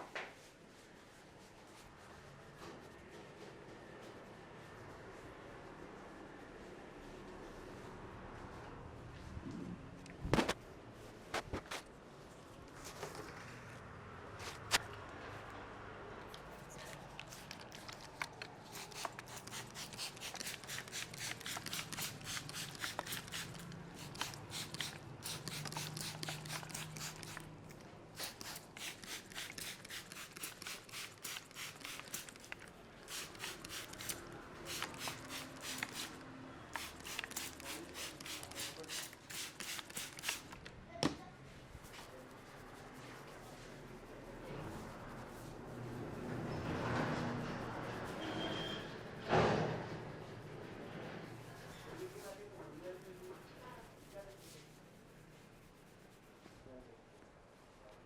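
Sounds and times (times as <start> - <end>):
hands rubbing hair crackling: 16.4 - 40.6.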